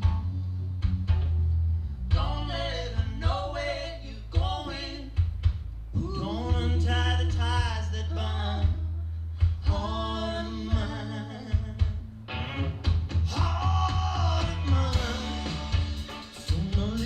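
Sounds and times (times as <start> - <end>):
heavy bass line: 0.0 - 17.0
drum hits: 4.4 - 5.8, 11.5 - 17.0
person singing: 6.0 - 17.0.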